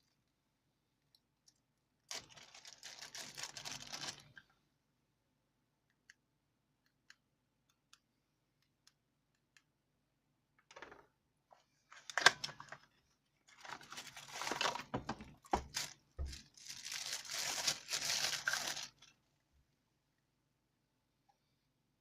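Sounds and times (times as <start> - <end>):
plastic or paper crinkling: 2.1 - 4.4, 13.5 - 19.2.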